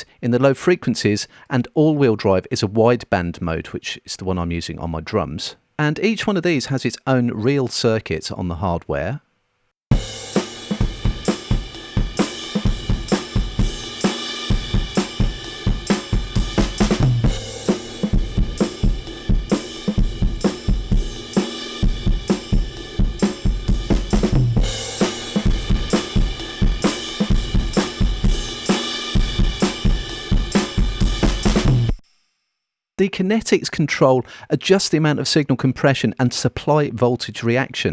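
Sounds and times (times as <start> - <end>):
distorted drum kit groove: 9.9 - 32.1.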